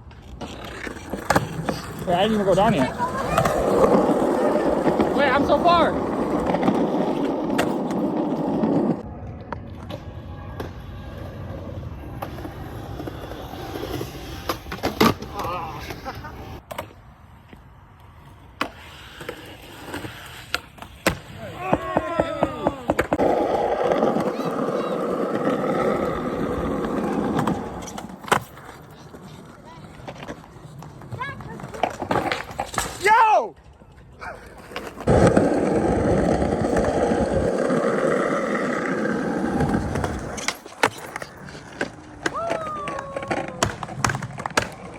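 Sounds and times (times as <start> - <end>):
skateboard rolling on pavement: 0.0 - 44.9.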